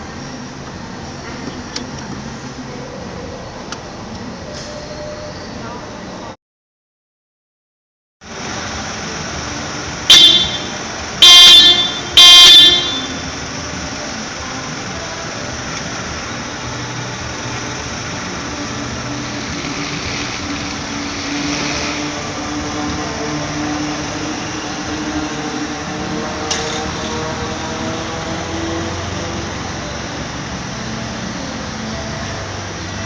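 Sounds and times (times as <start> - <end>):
running vehicle noise: 0.0 - 6.4, 8.2 - 33.0
car horn honking: 10.1 - 13.3.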